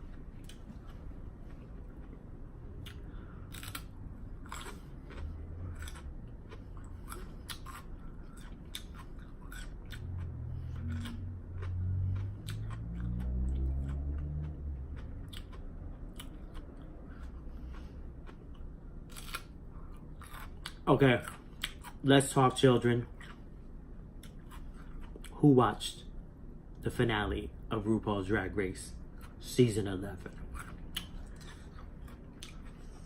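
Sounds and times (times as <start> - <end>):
low muffled hum: 0.0 - 33.0
wet crunchy chewing: 0.4 - 22.0.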